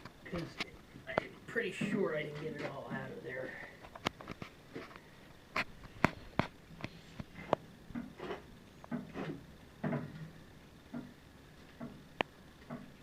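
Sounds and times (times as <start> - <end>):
dull metal clunks: 7.9 - 10.3.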